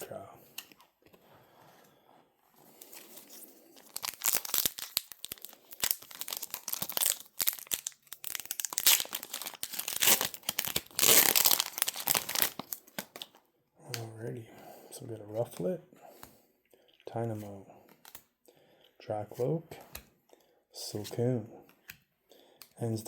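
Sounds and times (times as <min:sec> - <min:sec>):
foil wrapper crinkling: 0:02.8 - 0:13.4
foil wrapper tearing: 0:03.8 - 0:13.2.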